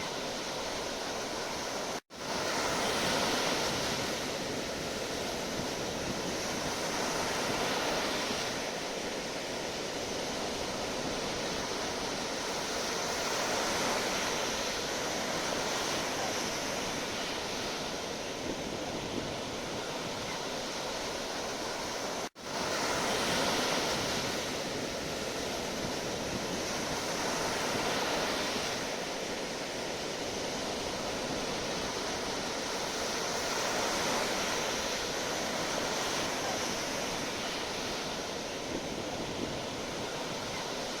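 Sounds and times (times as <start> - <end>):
sea waves breaking on shore: 0.0 - 41.0.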